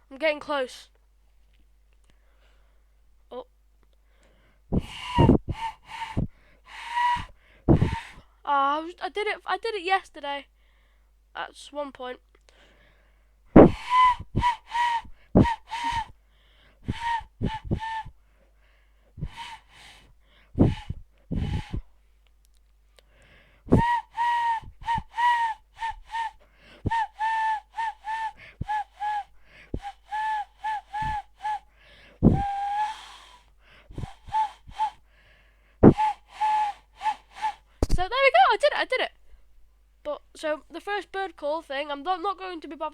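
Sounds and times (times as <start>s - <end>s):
hand whistle hoots: 4.8s - 8.2s, 13.6s - 16.1s, 16.8s - 18.2s, 19.2s - 20.0s, 20.6s - 21.9s, 23.7s - 35.0s, 35.8s - 38.0s.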